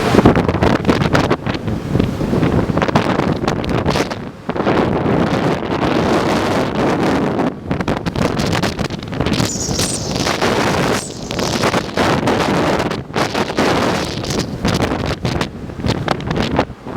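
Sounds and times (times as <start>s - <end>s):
strong wind buffeting microphone: 9.0s - 16.9s
high hiss: 9.4s - 12.1s.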